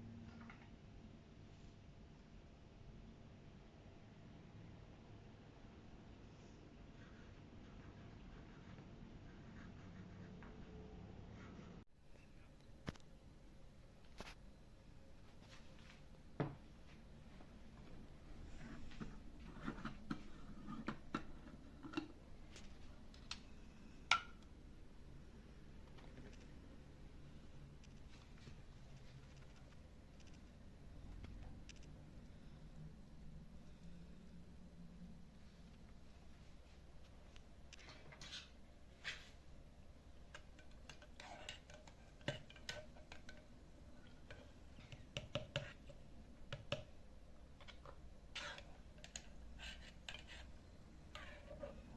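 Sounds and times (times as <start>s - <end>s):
kitchen utensils clicking and tapping: 40.2s - 46.9s.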